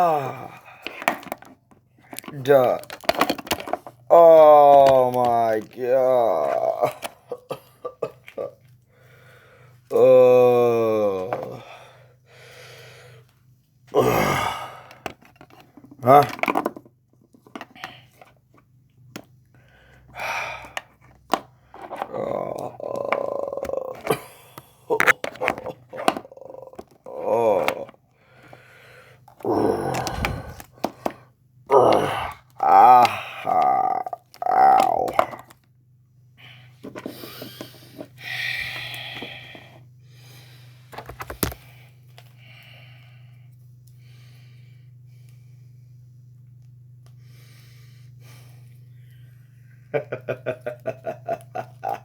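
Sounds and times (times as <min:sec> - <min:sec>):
plastic figures clicking and tapping: 0:00.8 - 0:04.0, 0:04.6 - 0:07.1, 0:20.6 - 0:28.6, 0:31.9 - 0:35.6, 0:41.0 - 0:41.6
breathy voice hiss: 0:14.0 - 0:15.0, 0:22.1 - 0:30.8, 0:31.7 - 0:35.3, 0:37.2 - 0:39.8.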